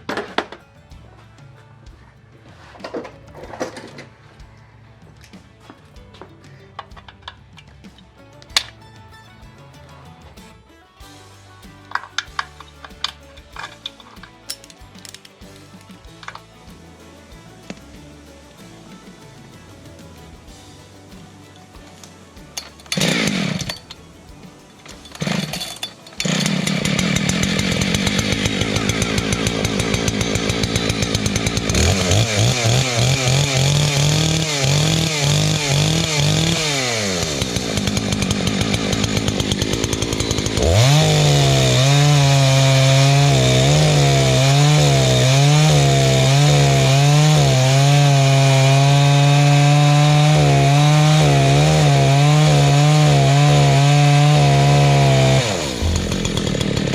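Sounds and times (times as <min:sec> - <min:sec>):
chainsaw cutting wood: 0:11.0 - 0:56.9
chainsaw starting and revving: 0:11.0 - 0:56.9.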